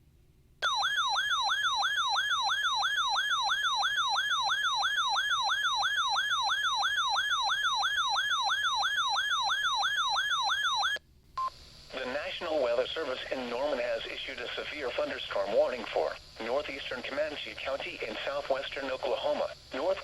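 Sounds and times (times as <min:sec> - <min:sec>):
warbling electronic alert siren: 0:00.6 - 0:11.0.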